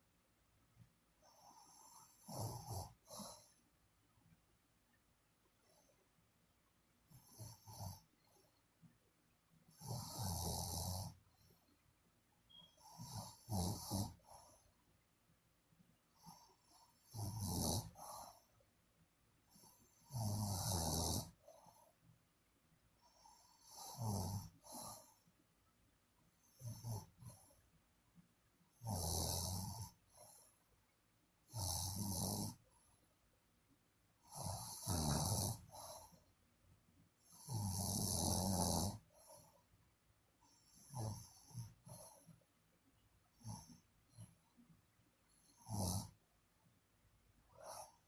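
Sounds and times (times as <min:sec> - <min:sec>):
person snoring: 0:09.8 - 0:11.2, 0:13.0 - 0:14.5, 0:16.3 - 0:18.4, 0:19.7 - 0:21.4, 0:23.2 - 0:25.2, 0:28.8 - 0:30.0, 0:31.5 - 0:32.6, 0:34.2 - 0:36.2, 0:37.3 - 0:39.1, 0:40.8 - 0:42.2, 0:45.6 - 0:46.2.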